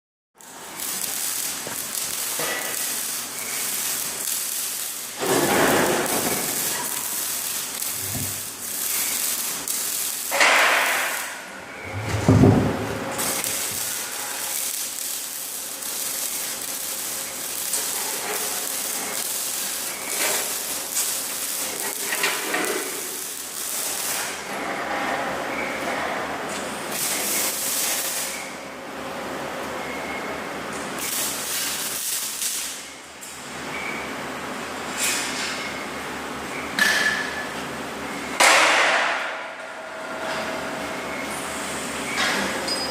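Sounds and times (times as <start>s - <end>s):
welding arc hissing: 0.4s - 24.6s, 26.8s - 28.6s, 31.0s - 32.9s
loud thumps: 12.0s - 12.9s.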